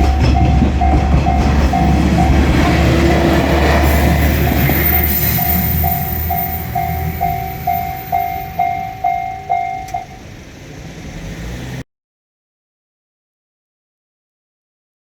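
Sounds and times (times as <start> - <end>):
level-crossing alarm bell ringing: 0.0 - 10.3
diesel railcar rumble: 0.0 - 11.8.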